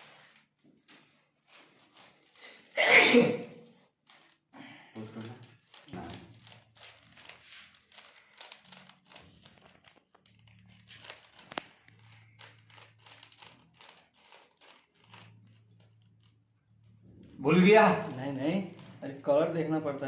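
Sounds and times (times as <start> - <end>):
plastic puzzle cube clicking: 4.1 - 15.6.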